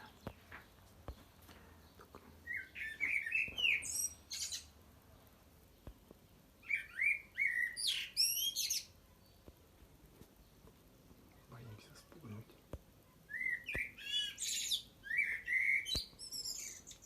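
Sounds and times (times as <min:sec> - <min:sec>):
blackbird singing: 0:01.8 - 0:04.7, 0:06.6 - 0:09.5, 0:13.2 - 0:17.0.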